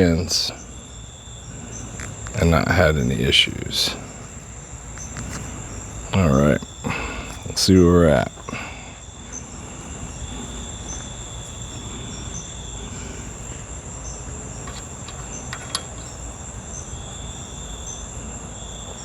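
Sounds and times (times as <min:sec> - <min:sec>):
low background rumble: 0:00.0 - 0:18.8
crickets chirping: 0:00.0 - 0:19.0.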